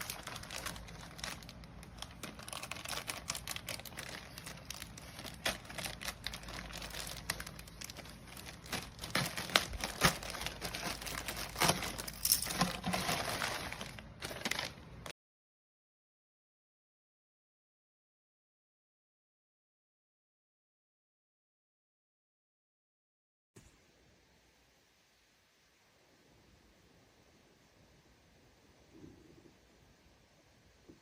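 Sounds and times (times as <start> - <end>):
plastic crinkling: 0.0 - 15.1.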